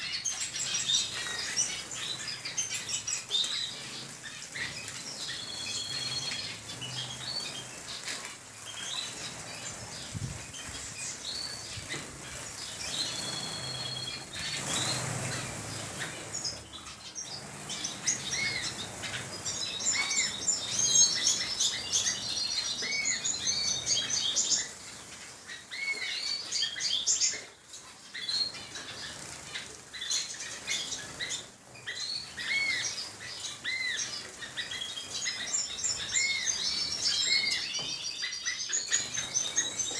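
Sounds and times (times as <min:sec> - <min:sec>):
small birds chirping: 0:00.0 - 0:39.9
wings fluttering: 0:07.2 - 0:16.6.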